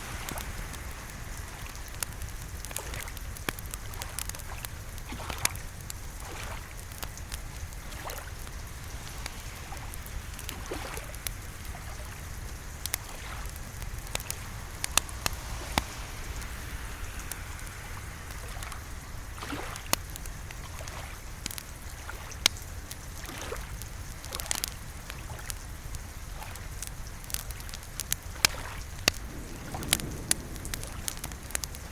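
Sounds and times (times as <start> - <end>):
rain: 0.0 - 31.9
wood fire crackling and popping: 0.0 - 31.9
low rumble: 29.2 - 31.9.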